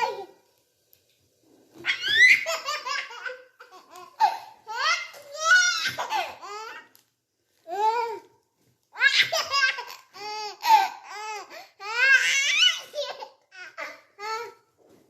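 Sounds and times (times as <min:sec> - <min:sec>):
baby laughing: 0:01.8 - 0:06.9, 0:09.0 - 0:14.4.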